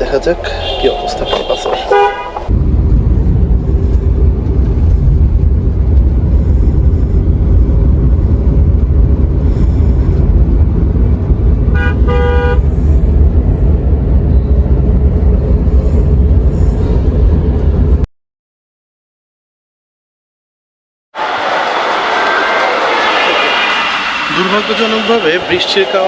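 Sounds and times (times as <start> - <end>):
city traffic rumble: 0.0 - 18.1, 21.2 - 26.0
vehicle horn honking: 0.5 - 2.5, 11.7 - 12.7
high-pitched toots: 22.2 - 26.0.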